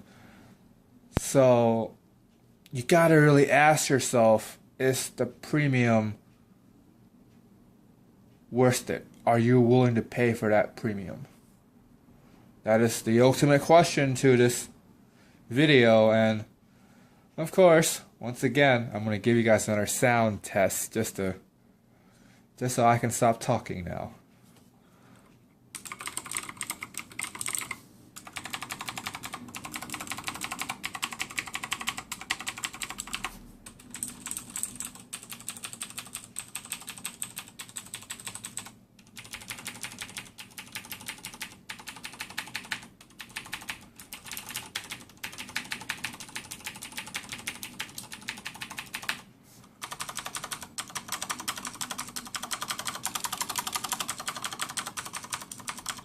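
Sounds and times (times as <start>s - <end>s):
mechanical keyboard typing: 25.8s - 56.0s.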